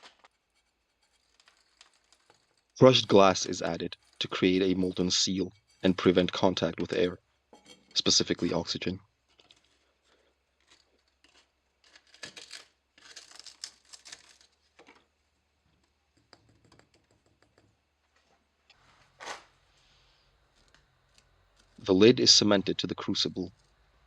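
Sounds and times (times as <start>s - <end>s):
crushed glass crinkling and rustling: 0.0s - 6.4s, 7.6s - 15.2s, 18.7s - 21.9s.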